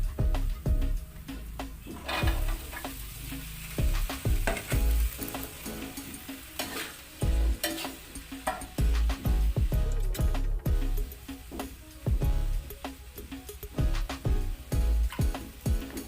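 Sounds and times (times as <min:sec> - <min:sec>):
food sizzling in a hot pan: 0:00.1 - 0:16.0
spatula scraping a pan: 0:01.8 - 0:03.8, 0:05.9 - 0:08.7.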